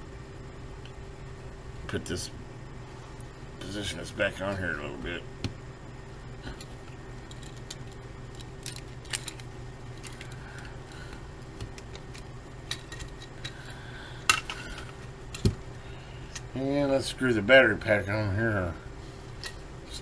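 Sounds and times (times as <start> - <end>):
steady low hum: 0.0 - 20.0
cassette recorder parts clicking: 6.6 - 13.6.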